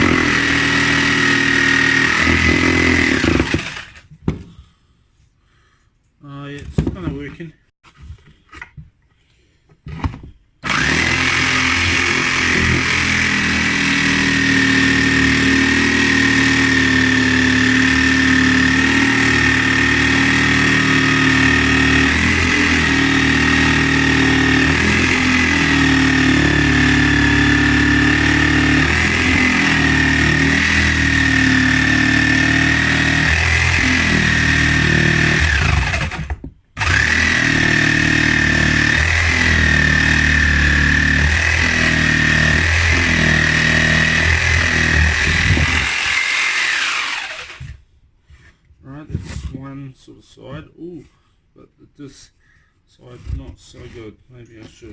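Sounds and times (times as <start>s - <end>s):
electric jigsaw cutting wood: 0.0s - 4.1s, 10.6s - 47.8s.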